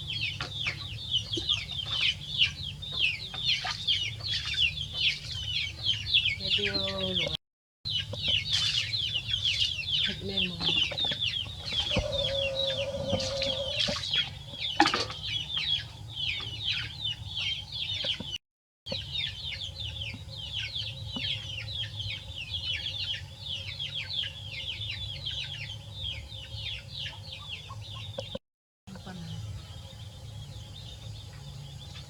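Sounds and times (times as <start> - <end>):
birds chirping: 0.0 - 32.0
steady low hum: 28.9 - 32.0.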